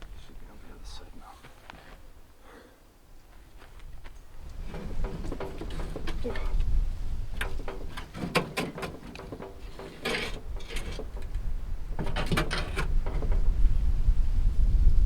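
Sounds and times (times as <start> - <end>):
knocks clicks and clatter: 4.5 - 13.6.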